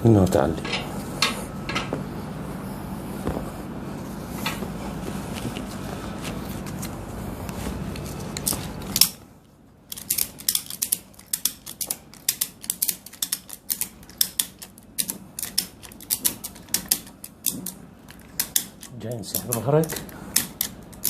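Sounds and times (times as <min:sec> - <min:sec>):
steady low hum: 0:00.0 - 0:21.0
rapid mechanical ratchet clicking: 0:09.9 - 0:21.0.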